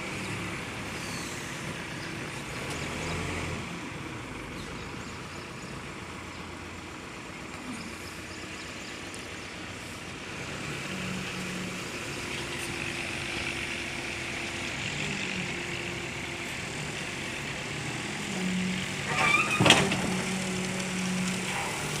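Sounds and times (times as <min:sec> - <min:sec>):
bulldozer running: 0:00.0 - 0:22.0
brief squeal: 0:19.1 - 0:19.9.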